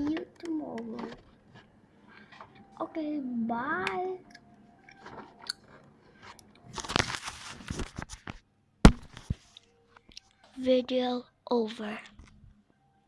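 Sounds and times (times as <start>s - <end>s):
child chewing: 4.2s - 7.0s
sharp knock: 8.9s - 9.4s.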